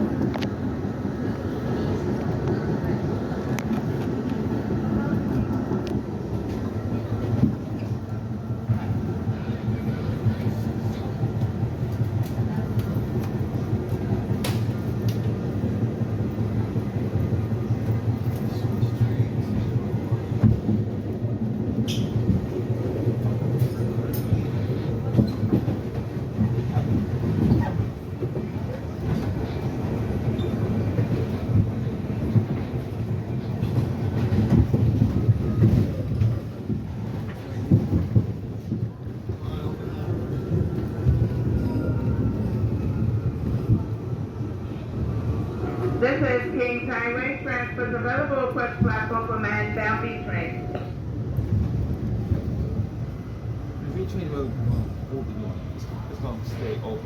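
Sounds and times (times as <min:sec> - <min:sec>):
wheels rumbling on rail: 0:00.0 - 0:57.0
rail joint clacks: 0:18.2 - 0:42.6.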